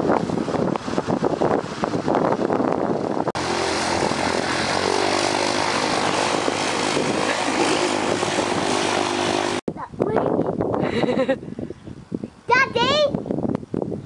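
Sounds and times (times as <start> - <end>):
light aircraft engine and propeller: 0.0 - 9.6.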